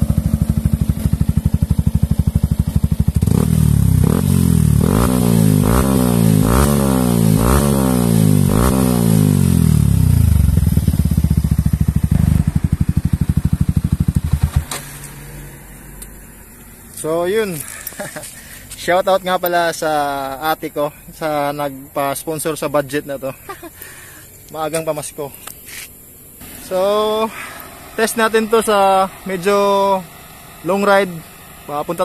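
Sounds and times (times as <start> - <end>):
motorcycle engine revving: 0.0 - 16.0, 25.7 - 32.0.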